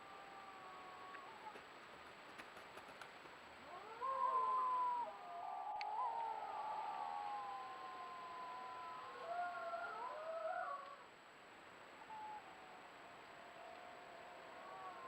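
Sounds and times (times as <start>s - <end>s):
wolves howling: 0.0s - 1.6s, 3.6s - 11.0s, 12.0s - 15.0s.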